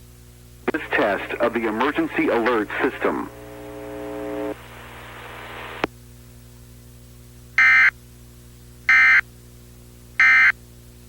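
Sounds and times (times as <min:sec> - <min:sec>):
background hiss: 0:00.7 - 0:05.9.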